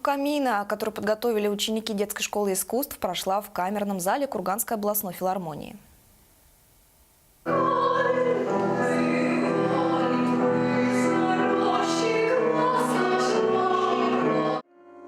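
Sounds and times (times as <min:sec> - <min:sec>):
opera-style singing: 0:07.5 - 0:14.6
piano accompaniment: 0:07.5 - 0:15.0.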